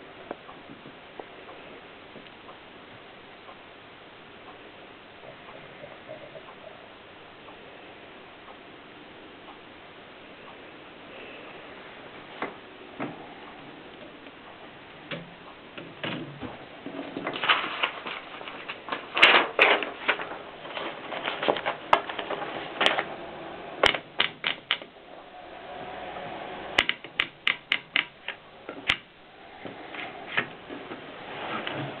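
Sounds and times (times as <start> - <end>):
typewriter clacking: 23.8 - 24.9, 26.8 - 29.1.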